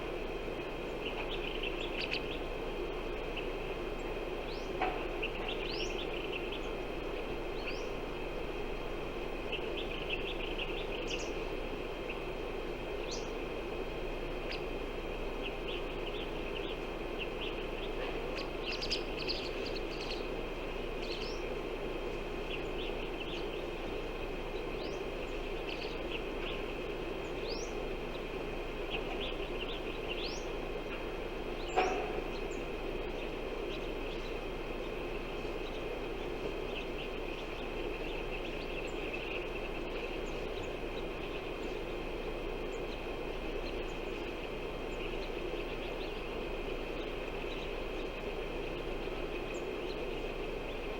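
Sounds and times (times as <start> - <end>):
outdoor background noise: 0.0 - 50.9
small birds chirping: 0.0 - 50.9.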